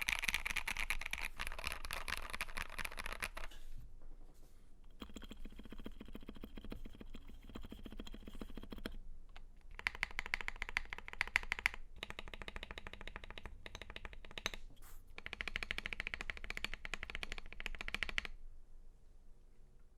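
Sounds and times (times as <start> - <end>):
fast typing on mechanical keyboard: 0.0 - 3.5, 4.9 - 9.0, 9.7 - 14.5, 15.2 - 18.3.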